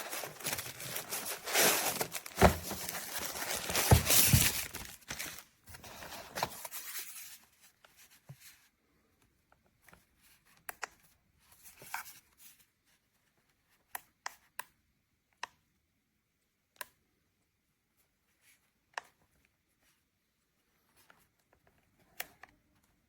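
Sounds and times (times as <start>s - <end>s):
rustling and crinkling handling: 0.0s - 8.7s.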